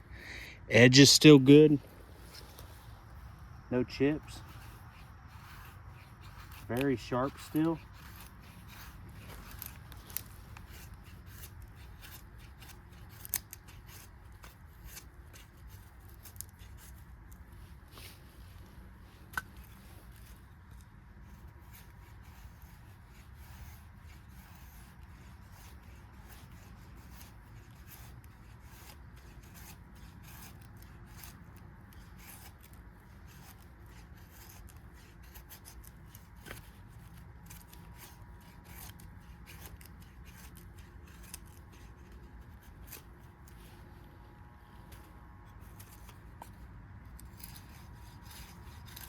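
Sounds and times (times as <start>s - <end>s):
knife scraping wooden stick: 0.8s - 49.0s.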